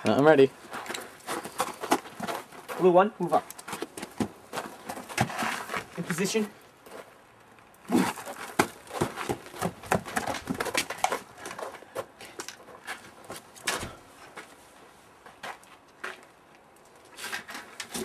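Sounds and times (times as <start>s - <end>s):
irregular knocks and scuffs: 0.6s - 6.2s, 7.9s - 14.6s.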